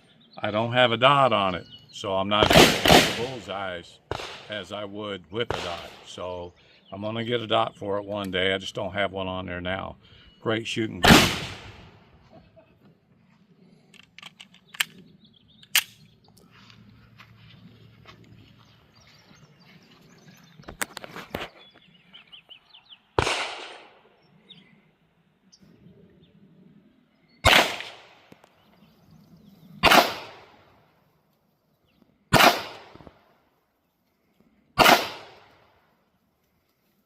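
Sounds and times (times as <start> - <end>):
pistol shots echoing: 2.4 - 3.5, 4.1 - 4.6, 5.5 - 6.2, 11.0 - 11.9, 23.2 - 24.1, 27.4 - 28.3, 29.8 - 30.6, 32.3 - 33.0, 34.8 - 35.7.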